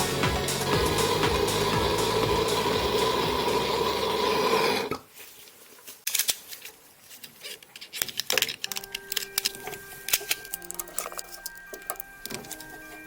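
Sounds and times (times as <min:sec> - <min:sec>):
motor-driven tool running: 0:00.0 - 0:04.9
hard parts clicking and knocking: 0:07.5 - 0:12.6.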